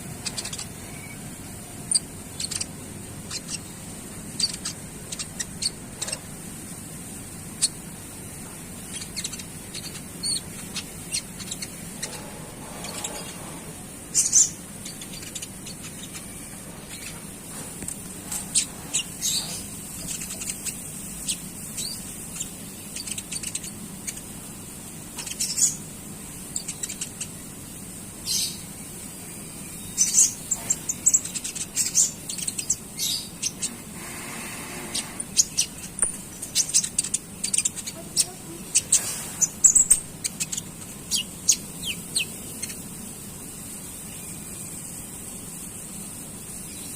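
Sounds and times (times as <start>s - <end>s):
songbird chirping: 0.0s - 6.3s, 28.2s - 43.0s
background hiss: 0.0s - 12.7s, 13.3s - 46.9s.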